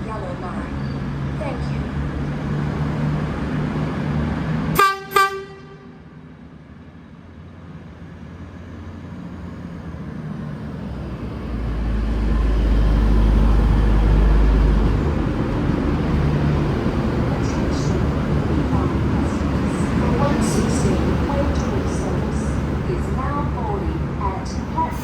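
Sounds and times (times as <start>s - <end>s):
deep train rumble: 0.0s - 25.0s
low railcar horn toots: 4.8s - 6.1s.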